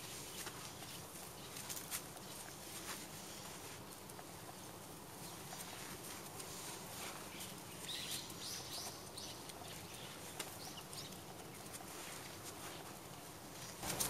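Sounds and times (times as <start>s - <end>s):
outdoor background noise: 0.0s - 14.0s.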